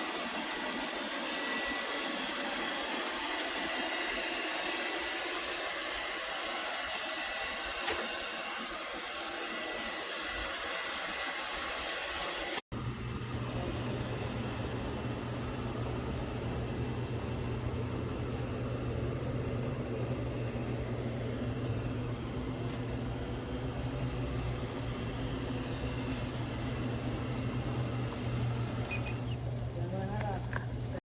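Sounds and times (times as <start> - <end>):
robot vacuum motor whirring: 0.0 - 12.6.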